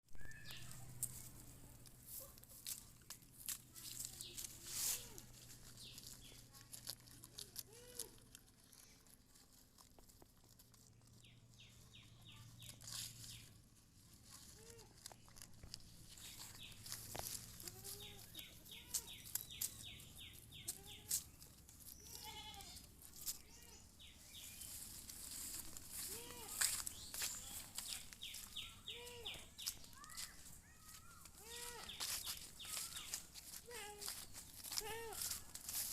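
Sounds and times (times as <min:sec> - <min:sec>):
goats bleating: 0:17.6 - 0:19.1, 0:21.9 - 0:23.8.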